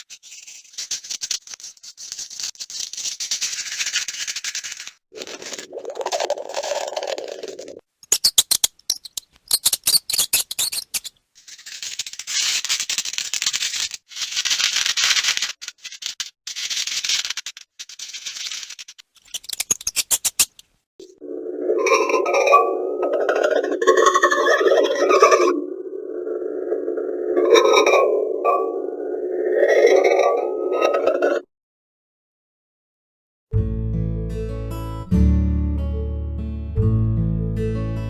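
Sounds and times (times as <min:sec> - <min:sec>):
mice scratching and rustling: 0:00.0 - 0:07.8, 0:10.2 - 0:20.5.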